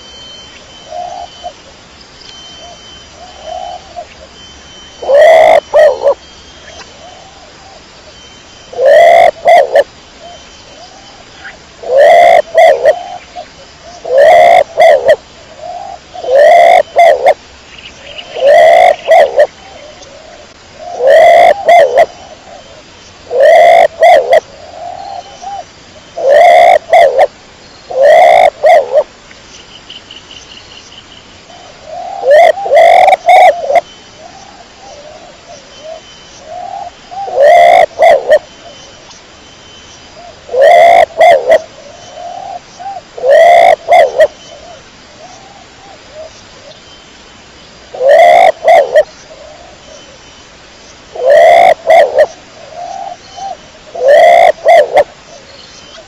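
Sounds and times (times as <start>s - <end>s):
pigeon cooing: 5.0s - 6.2s, 8.7s - 9.9s, 11.8s - 13.2s, 14.0s - 17.4s, 18.3s - 22.6s, 23.3s - 25.6s, 26.2s - 27.3s, 27.9s - 29.1s, 31.8s - 33.8s, 36.5s - 38.4s, 40.5s - 44.4s, 47.9s - 49.8s, 51.2s - 55.1s.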